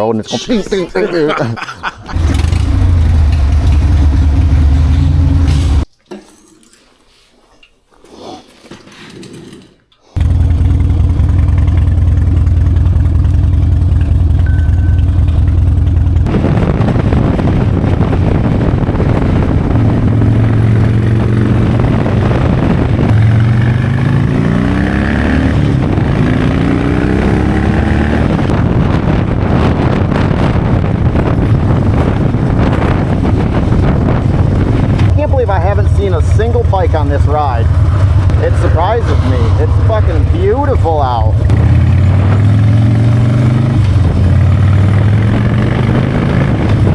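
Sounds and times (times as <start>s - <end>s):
motorcycle engine running: 2.1s - 5.8s, 10.2s - 46.9s
wind rush: 16.2s - 46.9s.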